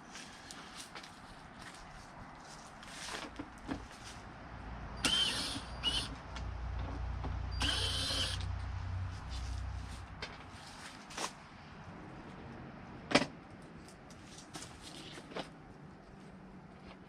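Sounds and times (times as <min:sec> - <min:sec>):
cordless drill motor whine: 0:05.0 - 0:06.1, 0:07.5 - 0:08.5.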